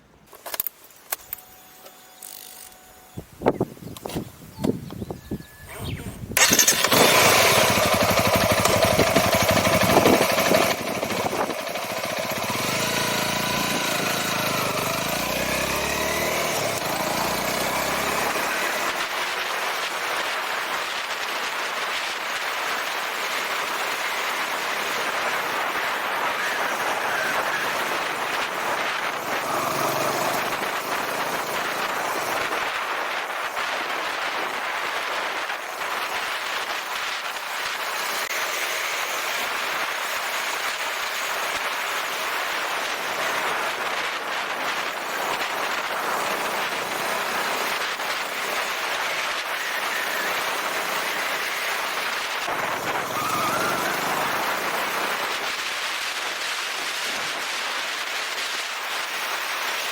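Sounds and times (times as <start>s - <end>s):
wind and road noise: 0.0s - 59.9s
motorcycle engine: 5.6s - 20.8s, 22.5s - 32.7s, 37.9s - 55.7s.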